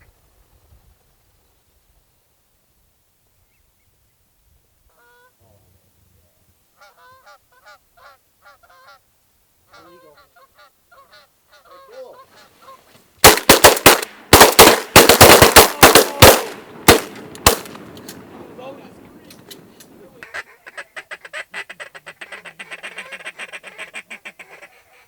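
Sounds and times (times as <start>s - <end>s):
goose honking calls: 6.8s - 9.0s, 9.7s - 12.9s, 20.2s - 25.0s
shotgun blasts: 13.2s - 18.2s.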